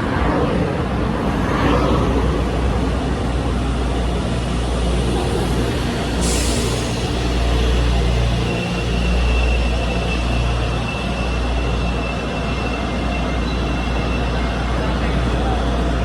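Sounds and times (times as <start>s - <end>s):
electric train hum: 0.0s - 16.0s
air hiss: 6.2s - 7.4s.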